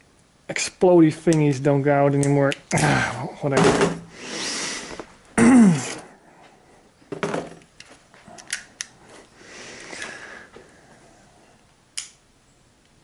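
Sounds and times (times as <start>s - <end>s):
short grunt: 5.4s - 6.2s
cap gun hammer clicks: 12.0s - 12.2s.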